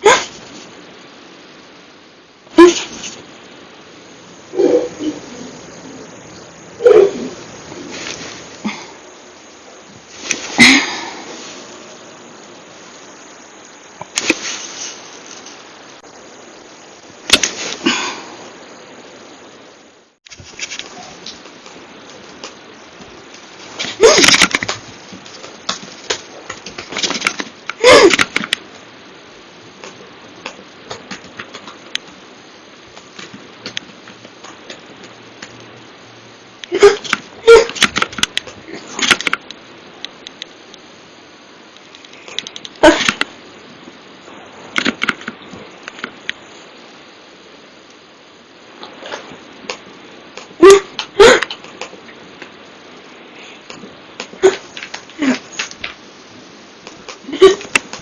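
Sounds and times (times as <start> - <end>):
woman hiccupping: 0.0 - 0.4, 4.5 - 5.6, 6.8 - 7.4, 10.6 - 11.2, 23.8 - 24.7, 27.7 - 28.5, 36.6 - 37.9, 42.8 - 43.2, 50.5 - 52.0, 53.7 - 55.8, 57.1 - 58.0.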